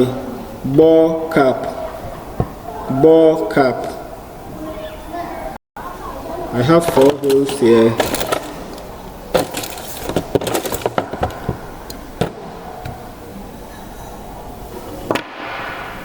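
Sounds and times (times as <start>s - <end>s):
plastic parts clicking: 6.7s - 13.1s.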